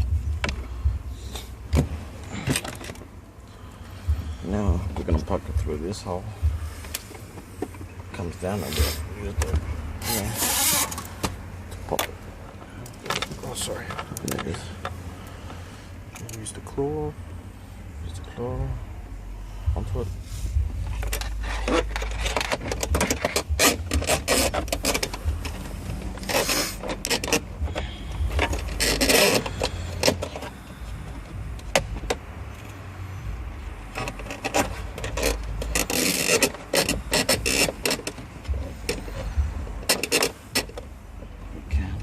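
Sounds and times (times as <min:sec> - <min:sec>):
low rumble: 0:00.0 - 0:12.8, 0:17.1 - 0:42.0
tool scraping plastic trim: 0:21.1 - 0:30.5, 0:34.0 - 0:38.3.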